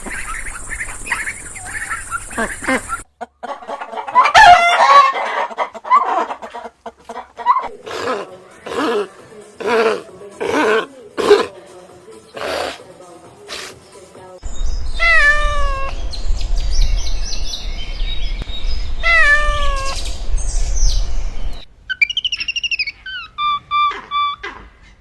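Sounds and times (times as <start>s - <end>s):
bird chirping: 0.0s - 3.2s, 14.4s - 25.0s
low background rumble: 14.5s - 21.9s
cat meowing: 15.0s - 15.9s, 19.0s - 20.0s.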